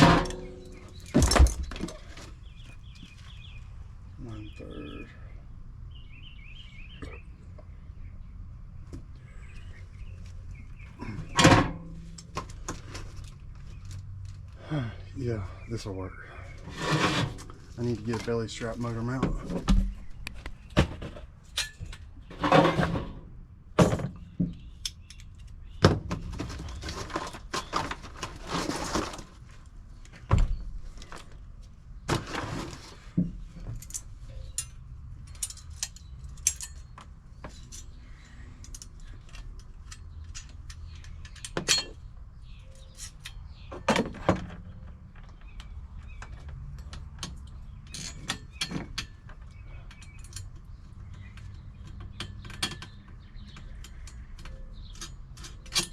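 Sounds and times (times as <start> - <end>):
metal tools clinking: 33.6 - 43.5, 47.4 - 53.0.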